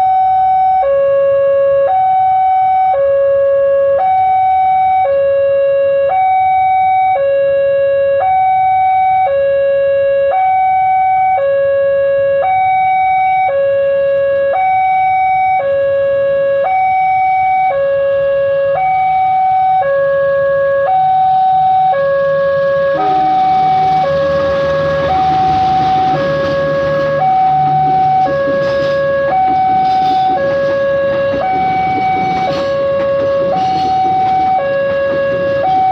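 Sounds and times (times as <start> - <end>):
level crossing siren alternating tones: 0.0 - 35.9
train rushing and rumbling: 21.2 - 35.9.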